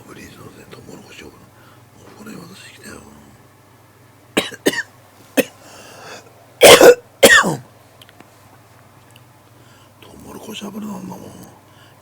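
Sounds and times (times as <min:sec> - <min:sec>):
man coughing: 0:04.4 - 0:05.6, 0:06.6 - 0:07.6.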